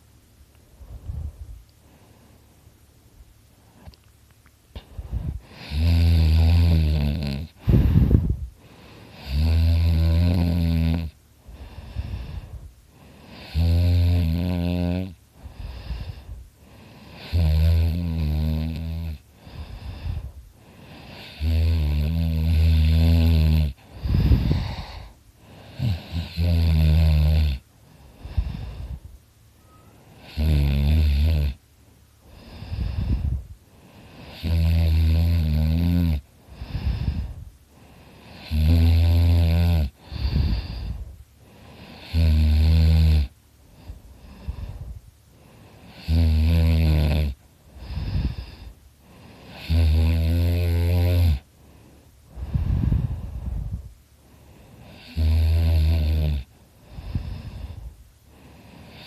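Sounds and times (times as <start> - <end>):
soft breathing: 0.0 - 2.8, 4.7 - 5.8, 7.5 - 9.4, 11.4 - 13.6, 15.2 - 17.5, 19.2 - 21.6, 23.7 - 26.3, 27.6 - 30.3, 31.8 - 34.6, 36.2 - 38.5, 39.9 - 42.1, 43.4 - 46.1, 47.3 - 49.7, 51.4 - 55.2, 56.4 - 59.0
man snoring loudly: 5.4 - 8.0, 9.1 - 12.4, 13.2 - 16.2, 16.9 - 27.6, 30.2 - 31.6, 34.0 - 41.0, 41.6 - 43.3, 45.9 - 48.7, 49.4 - 51.5, 54.8 - 57.8, 58.6 - 59.0.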